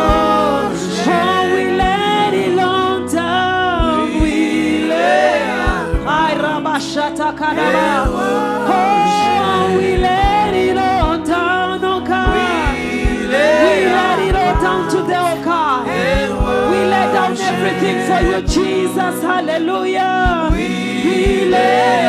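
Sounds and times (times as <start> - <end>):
soft kick drum beat: 0.0 - 2.2, 3.8 - 6.4, 7.6 - 9.1, 9.8 - 11.4, 12.2 - 19.0, 20.2 - 22.0
sung vocals: 0.0 - 22.0
sustained instrumental chords: 0.0 - 22.0.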